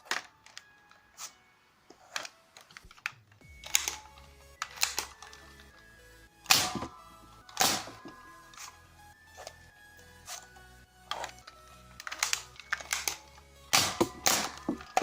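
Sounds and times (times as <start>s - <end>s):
plastic blaster clacks and snaps: 11.2s - 15.0s.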